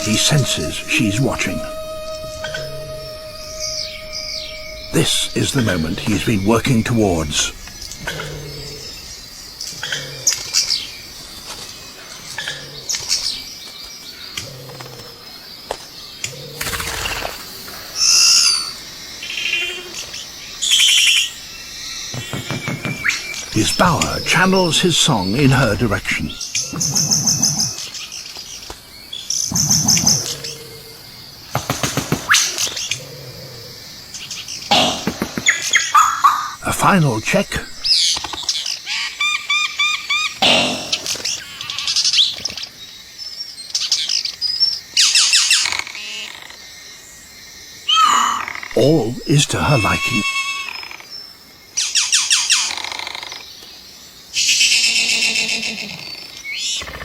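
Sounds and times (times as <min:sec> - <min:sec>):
bowerbird singing harsh notes: 0:00.0 - 0:09.1, 0:22.8 - 0:26.4, 0:35.7 - 0:38.1, 0:47.9 - 0:50.4
bird calling: 0:00.0 - 0:09.3, 0:34.2 - 0:42.2, 0:47.9 - 0:50.9
quiet bird notes: 0:00.0 - 0:46.5.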